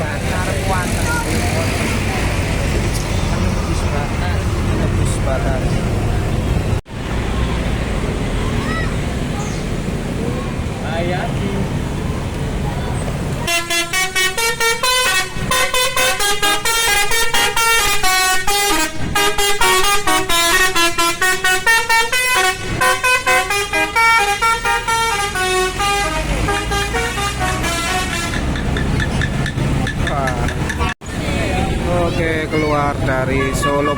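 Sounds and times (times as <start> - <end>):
multi-tone bus horn tune: 13.4 - 28.8, 33.2 - 33.9.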